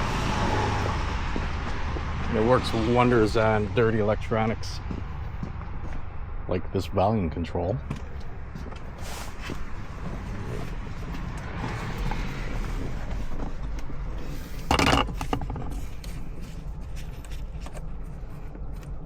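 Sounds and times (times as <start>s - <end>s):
steady low rumble: 0.0s - 14.8s.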